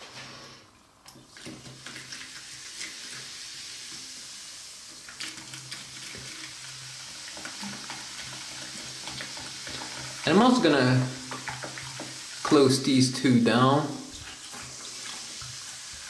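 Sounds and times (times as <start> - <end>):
soda fizzing: 1.1 - 16.0.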